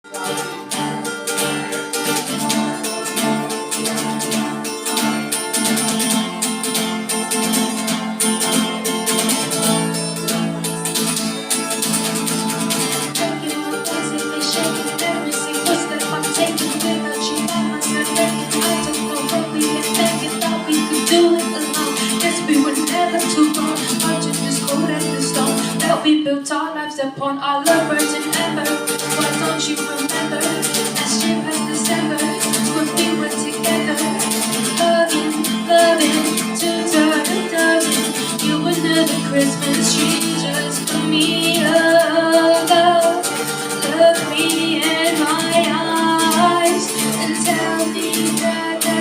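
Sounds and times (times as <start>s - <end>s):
plucked string chords: 0.0s - 26.1s, 27.6s - 49.0s
acoustic guitar strumming: 0.0s - 26.3s, 27.5s - 49.0s.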